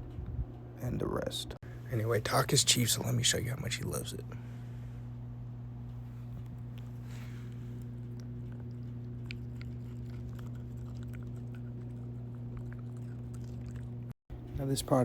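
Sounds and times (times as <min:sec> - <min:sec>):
low hum: 0:00.0 - 0:15.0
dog chewing a treat: 0:06.2 - 0:14.1.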